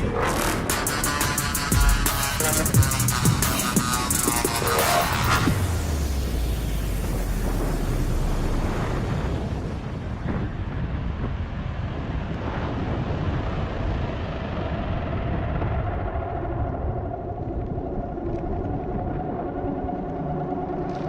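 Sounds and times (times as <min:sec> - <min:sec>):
wind buffeting microphone: 0:05.2 - 0:21.0.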